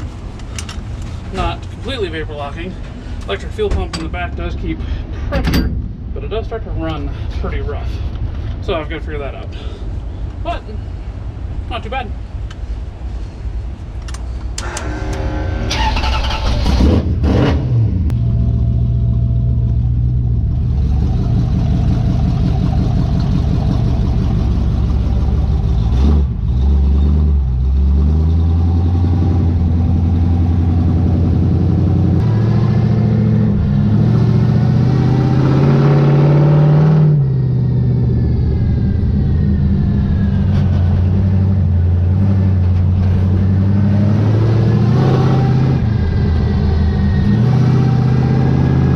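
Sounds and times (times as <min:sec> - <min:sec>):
car engine revving: 0:14.6 - 0:48.9.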